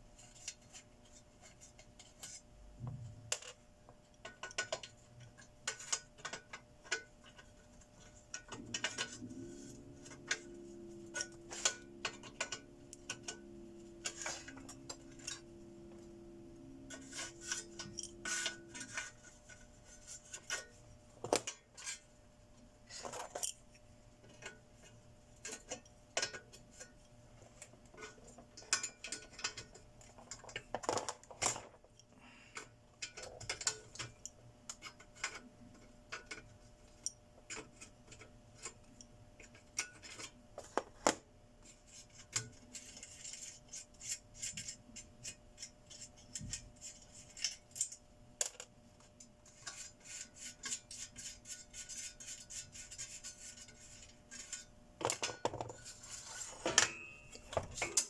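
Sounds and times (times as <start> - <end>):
low steady hum: 0.0 - 58.0
metal parts and tools clinking: 8.3 - 22.0, 54.3 - 58.0.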